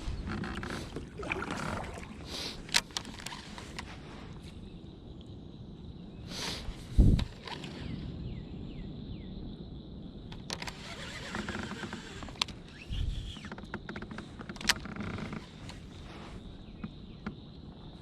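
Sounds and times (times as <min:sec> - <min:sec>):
sharp clicks and rustling: 0:13.4 - 0:15.8.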